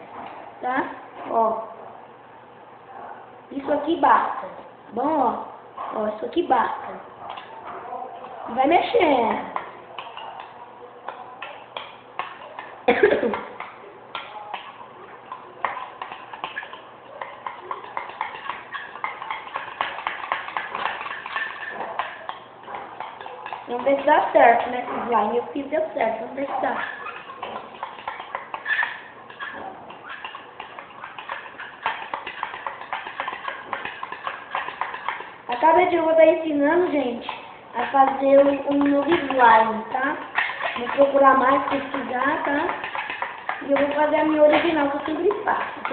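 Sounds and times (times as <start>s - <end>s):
utensil stirring slime in bowl: 3.6s - 45.9s
scrapes against bowl: 11.8s - 25.3s, 26.6s - 35.4s
person coughing: 12.9s - 13.4s.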